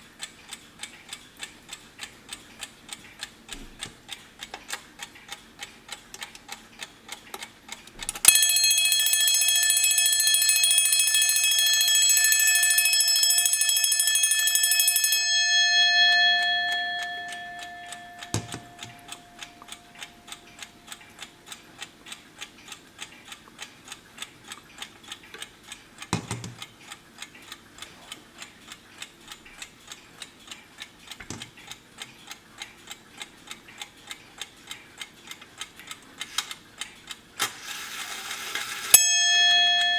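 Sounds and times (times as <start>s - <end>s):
alarm clock ticking: 0.0s - 39.9s
alarm bell ringing: 8.2s - 20.3s, 38.6s - 39.9s.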